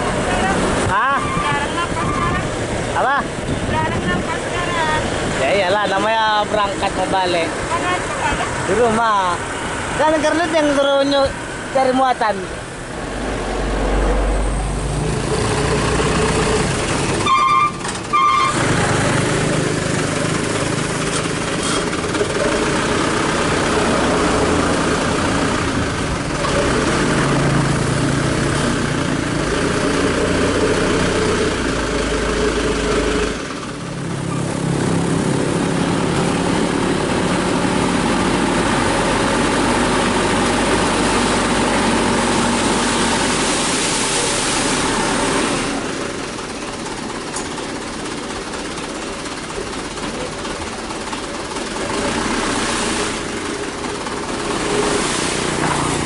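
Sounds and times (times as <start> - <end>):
truck engine running: 0.0 - 56.0
truck horn beeps: 17.2 - 18.8.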